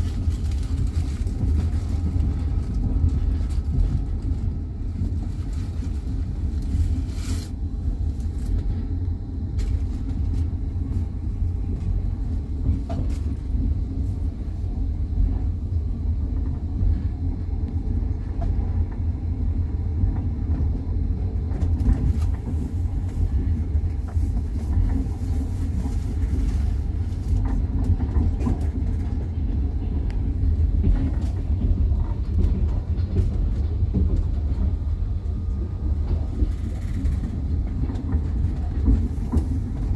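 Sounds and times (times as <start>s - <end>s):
train wheels rumbling on rails: 0.0s - 39.9s.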